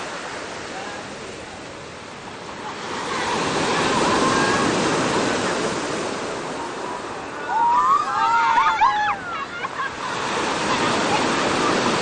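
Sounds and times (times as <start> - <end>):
sea wave breaking on beach: 2.5 - 12.0.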